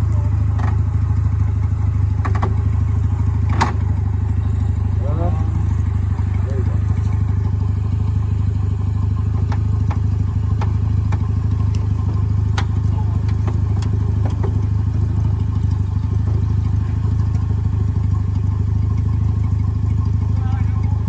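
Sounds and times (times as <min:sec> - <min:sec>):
sharp clicks and knocks: 0:00.0 - 0:04.4, 0:09.2 - 0:17.6
vehicle engine droning: 0:00.0 - 0:21.0.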